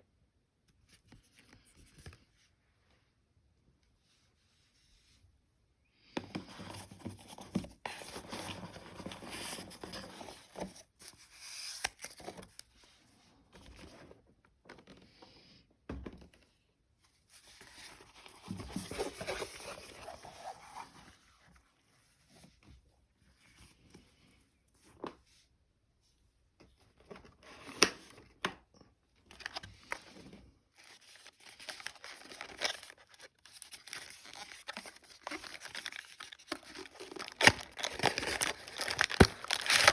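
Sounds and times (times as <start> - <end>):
card packaging tearing and crinkling: 30.8 - 39.9.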